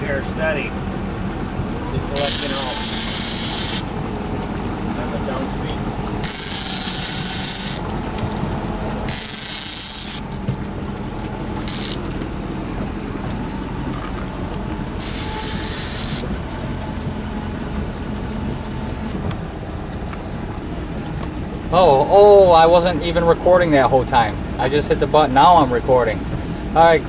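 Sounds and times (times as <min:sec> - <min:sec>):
boat motor running: 0:00.0 - 0:27.0
rasping noise bursts: 0:02.2 - 0:04.0, 0:06.2 - 0:07.9, 0:09.0 - 0:10.3, 0:11.6 - 0:12.0, 0:15.0 - 0:16.5.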